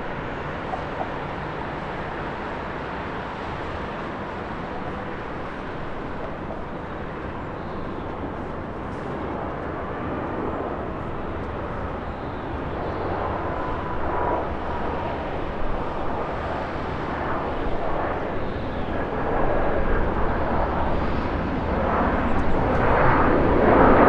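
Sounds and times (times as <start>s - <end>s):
faint engine whine: 0.0s - 24.0s
jet engines rushing: 0.0s - 24.0s.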